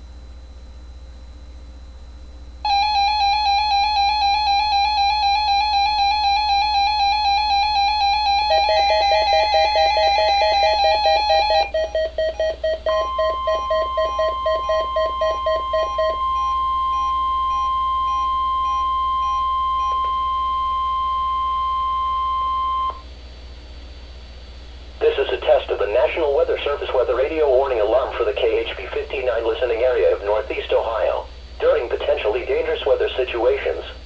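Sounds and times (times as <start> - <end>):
low electrical hum: 0.0 - 34.0
steady weather alert tone: 2.7 - 23.0, 25.0 - 34.0
weather radio electronic beeps: 6.8 - 23.0, 25.0 - 33.9.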